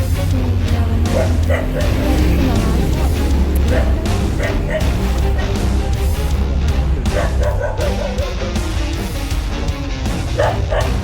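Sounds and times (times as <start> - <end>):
background music: 0.0 - 11.0
low rumble: 0.0 - 11.0
dog barking: 1.1 - 5.6, 7.0 - 8.5, 10.3 - 11.0.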